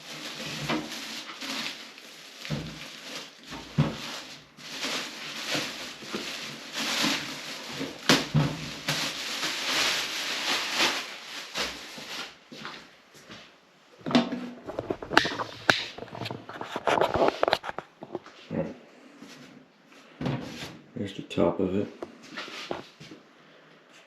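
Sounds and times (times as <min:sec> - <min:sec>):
packaging rustling and scraping: 0:00.0 - 0:12.9, 0:14.4 - 0:18.4, 0:22.2 - 0:23.1.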